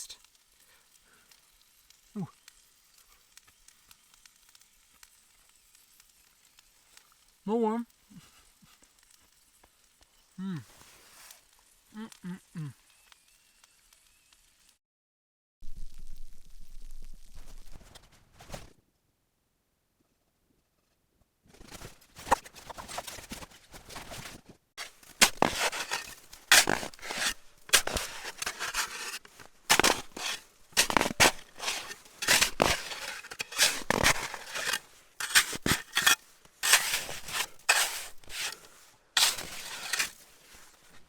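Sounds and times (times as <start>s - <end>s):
shovel scraping and crunching snow: 10.7s - 11.6s, 21.6s - 41.0s.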